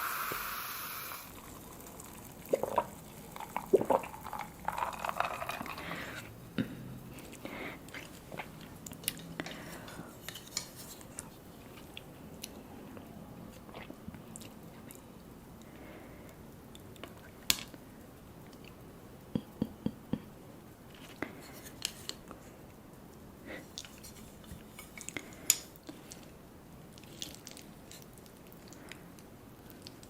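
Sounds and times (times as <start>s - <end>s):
person chewing noodles: 1.2s - 10.3s.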